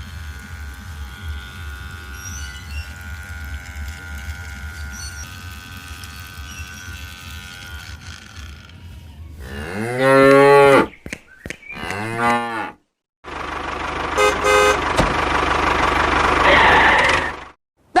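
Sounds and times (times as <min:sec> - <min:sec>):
engine running: 0:00.0 - 0:09.0, 0:13.2 - 0:17.6
cow mooing: 0:09.4 - 0:10.9, 0:11.8 - 0:12.8
short horn beep: 0:14.2 - 0:14.8.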